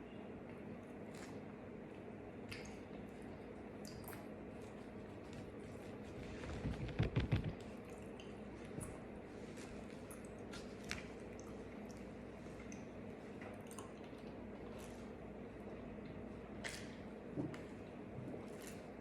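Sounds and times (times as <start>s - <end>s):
steady low hum: 0.0s - 19.0s
person chewing wetly: 9.9s - 17.0s.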